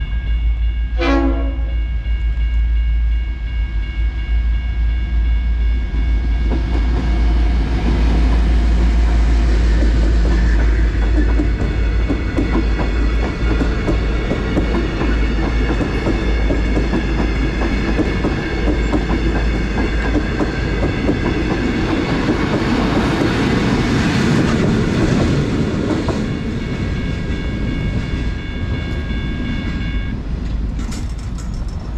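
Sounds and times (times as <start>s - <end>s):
crossing warning bells ringing: 0.0s - 31.9s
train rumbling: 0.0s - 31.9s
wheels clattering over rails: 30.6s - 31.9s.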